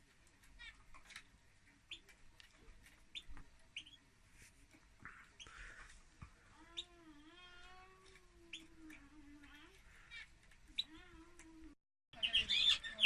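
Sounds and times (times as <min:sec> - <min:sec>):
finches chirping: 0:03.1 - 0:04.0, 0:08.4 - 0:11.0, 0:12.2 - 0:13.0.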